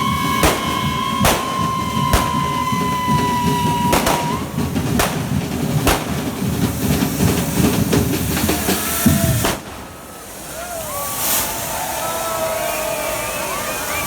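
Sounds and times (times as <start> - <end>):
high steady whistle: 0.0 - 5.3, 8.4 - 14.0
firecracker bangs: 0.0 - 10.6
fireworks crackling: 0.0 - 14.0.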